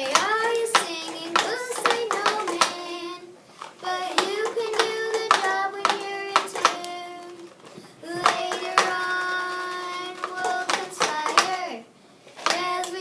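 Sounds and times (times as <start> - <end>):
sharp claps: 0.0 - 3.1, 3.8 - 7.4, 8.1 - 11.8.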